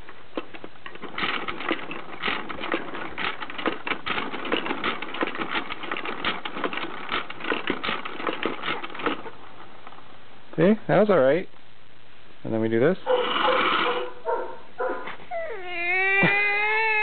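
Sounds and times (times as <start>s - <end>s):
rapid clattering rattle: 0.0s - 10.1s.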